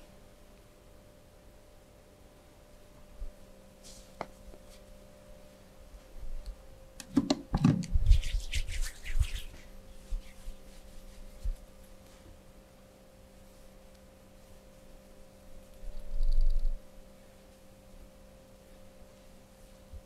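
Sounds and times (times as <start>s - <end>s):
hands rubbing and scratching skin: 7.8s - 12.2s.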